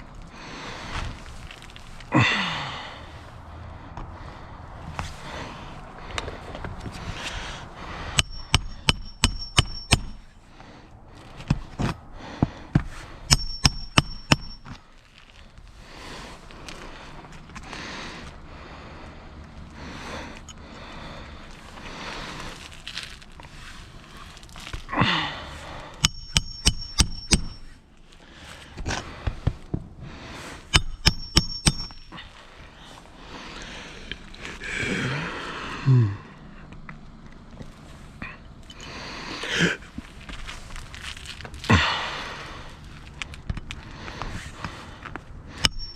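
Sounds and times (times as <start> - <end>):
hammer driving nails: 8.2 - 10.2, 13.3 - 14.7, 26.0 - 27.7, 30.7 - 32.1, 45.6 - 45.9.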